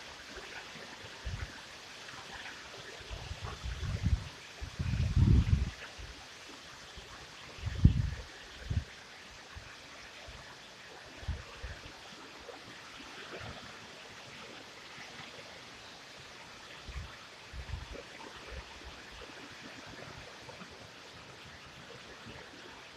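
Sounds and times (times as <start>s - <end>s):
wind buffeting microphone: 3.1s - 5.8s, 7.6s - 8.9s.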